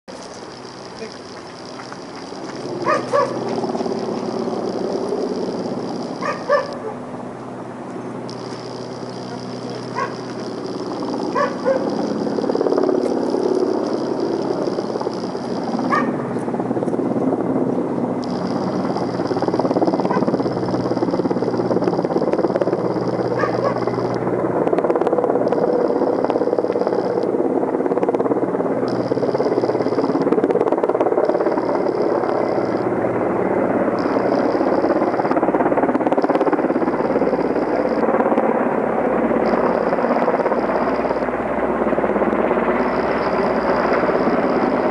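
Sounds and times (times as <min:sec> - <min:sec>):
helicopter rotor and engine: 0:00.1 - 0:44.9
dog barking: 0:02.8 - 0:03.4, 0:06.2 - 0:07.0, 0:09.9 - 0:10.2, 0:11.3 - 0:11.9, 0:15.9 - 0:16.2, 0:23.4 - 0:23.8.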